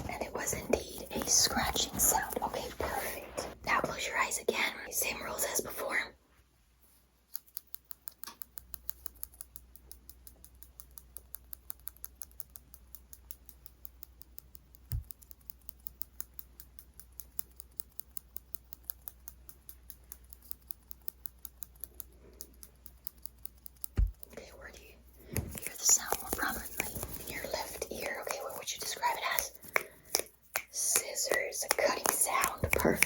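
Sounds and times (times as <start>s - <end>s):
scissors snipping: 25.3s - 33.0s.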